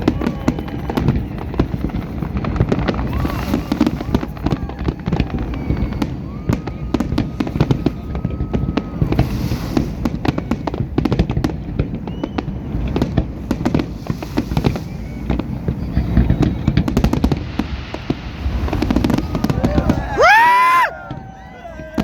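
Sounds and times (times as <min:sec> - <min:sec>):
firework cracks and bangs: 0:00.0 - 0:22.0
faint rising whistles: 0:12.0 - 0:12.6, 0:14.4 - 0:16.9
deep rumble of bursting shells: 0:16.6 - 0:21.4.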